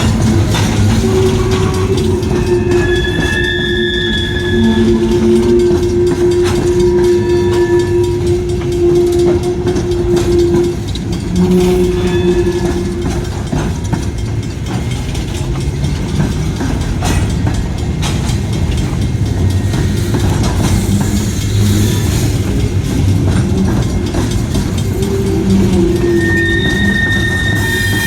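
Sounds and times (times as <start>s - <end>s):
freight train rumbling past: 0.0s - 28.0s
wheels clicking over rail joints: 0.0s - 28.0s.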